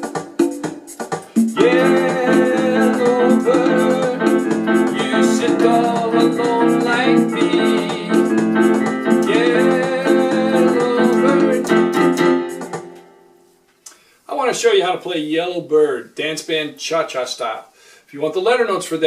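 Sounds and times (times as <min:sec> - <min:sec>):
merengue rhythm percussion: 0:00.0 - 0:13.2
electronic keyboard chords and melody: 0:00.0 - 0:13.6.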